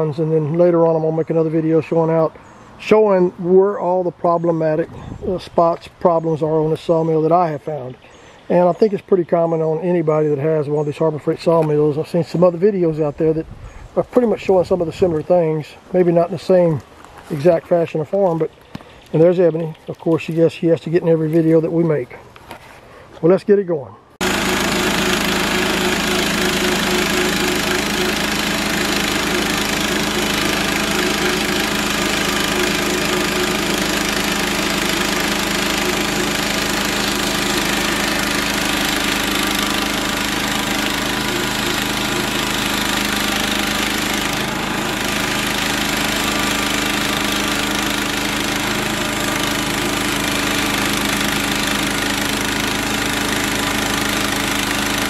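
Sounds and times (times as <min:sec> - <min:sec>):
gasoline engine running: 0:24.2 - 0:55.0.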